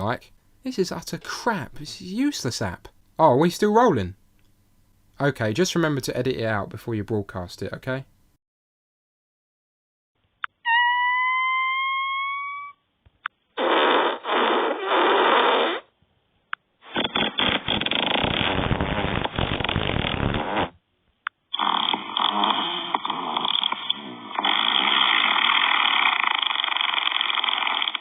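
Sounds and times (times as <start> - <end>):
squeaky fart sound: 10.4 - 12.8, 13.6 - 16.0, 16.8 - 20.8, 21.5 - 28.0
rasping fart sounds: 13.6 - 16.0, 16.8 - 20.8, 21.5 - 28.0.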